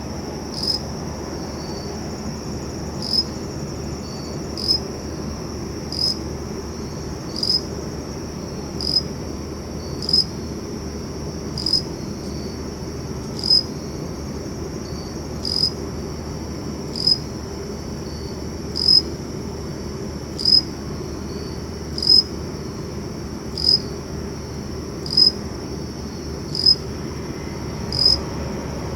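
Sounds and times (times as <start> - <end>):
crickets trilling: 0.0 - 28.9
loud cricket chirp: 0.0 - 28.9.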